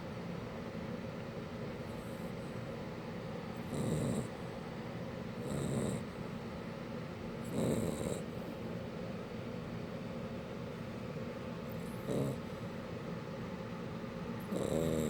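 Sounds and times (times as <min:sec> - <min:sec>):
low background hum: 0:00.0 - 0:15.0
puppy snoring: 0:03.6 - 0:04.5, 0:05.4 - 0:06.2, 0:07.4 - 0:08.6, 0:11.7 - 0:12.6, 0:14.4 - 0:15.0.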